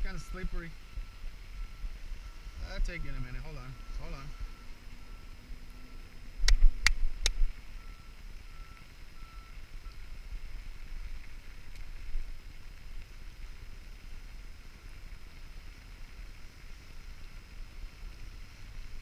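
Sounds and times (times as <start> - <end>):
faint beeping tone: 0.0 - 6.2, 7.6 - 10.0.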